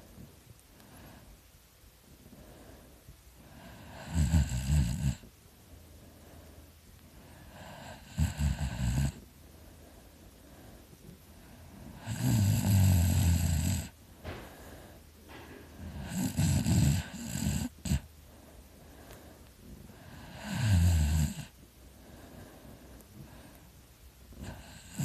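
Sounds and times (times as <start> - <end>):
person snoring heavily: 3.5 - 5.2, 7.4 - 9.2, 11.9 - 14.0, 15.8 - 18.1, 20.0 - 21.5, 24.4 - 25.0.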